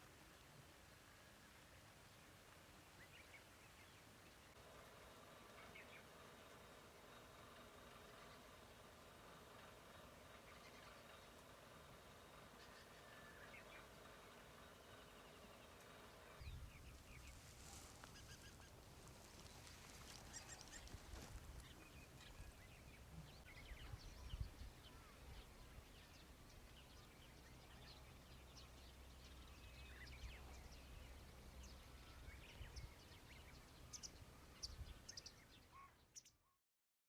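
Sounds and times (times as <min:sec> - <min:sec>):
low steady rumble: 0:00.1 - 0:35.6
faint bird chirps: 0:09.5 - 0:18.8, 0:19.4 - 0:36.6.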